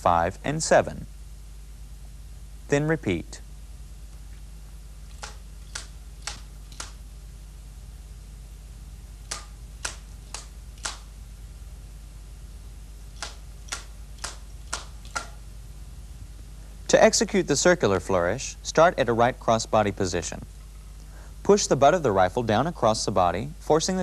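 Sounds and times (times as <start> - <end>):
hands slapping a spinning rifle: 5.1 - 7.0, 9.2 - 11.2, 13.2 - 15.4.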